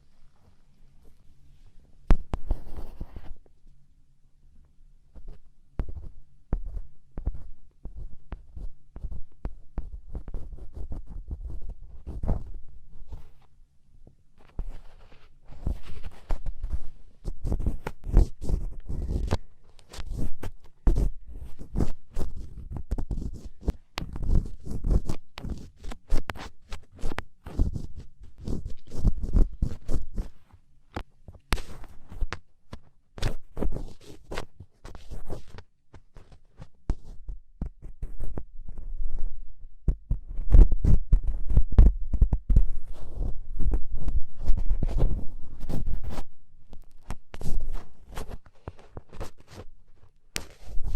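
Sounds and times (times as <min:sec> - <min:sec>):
ear pick scratching in ear: 0:02.2 - 0:03.4, 0:14.4 - 0:30.6, 0:31.3 - 0:50.9.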